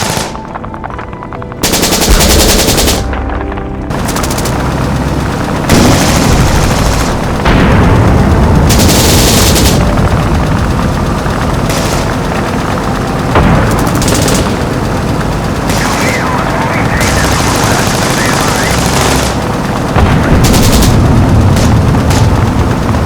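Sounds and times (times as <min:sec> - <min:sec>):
gunshots: 0:00.0 - 0:00.6, 0:01.6 - 0:03.2, 0:05.6 - 0:12.5, 0:13.3 - 0:14.9, 0:15.5 - 0:23.0
machine-gun fire: 0:00.0 - 0:00.6, 0:01.6 - 0:03.2, 0:03.9 - 0:23.0
booms: 0:05.7 - 0:10.6, 0:19.9 - 0:23.0.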